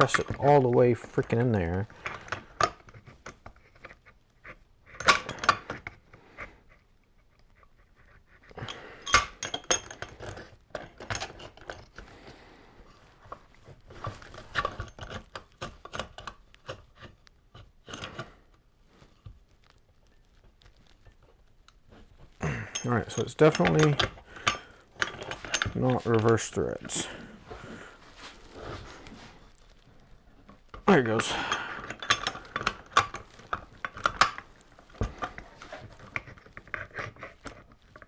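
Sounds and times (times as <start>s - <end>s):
metallic clicks and clanks: 0.0s - 4.0s, 4.9s - 6.0s, 22.4s - 27.2s, 30.7s - 37.0s.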